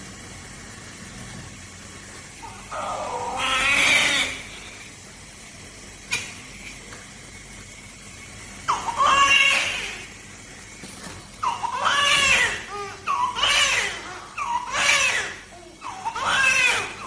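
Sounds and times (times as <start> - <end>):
baby crying: 2.4 - 4.5, 8.7 - 10.1, 11.4 - 17.0.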